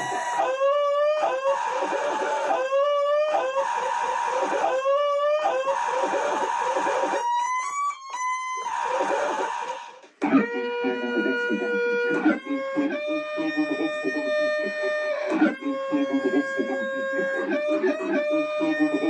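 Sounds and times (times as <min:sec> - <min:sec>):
man's squealing laugh looped: 0:00.0 - 0:19.0.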